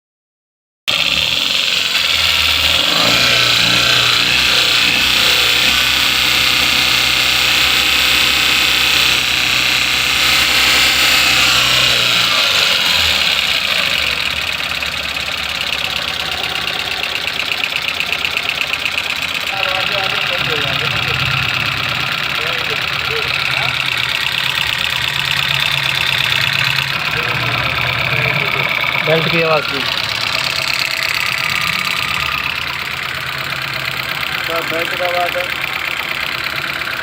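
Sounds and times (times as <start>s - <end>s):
drive belt chirping and slapping: 0.9s - 37.0s
engine running: 0.9s - 37.0s.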